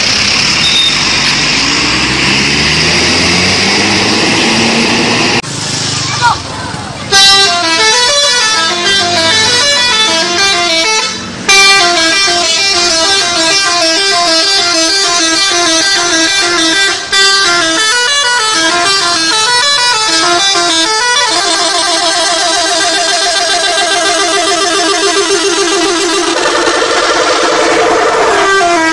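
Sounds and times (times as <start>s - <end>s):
bus musical horn melody: 0.6s - 1.3s, 7.1s - 28.9s.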